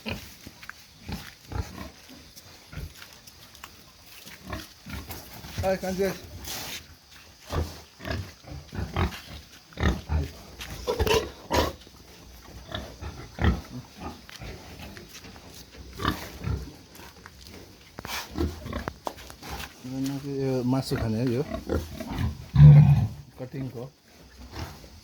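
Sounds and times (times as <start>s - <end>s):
pigs grunting: 7.4s - 25.0s.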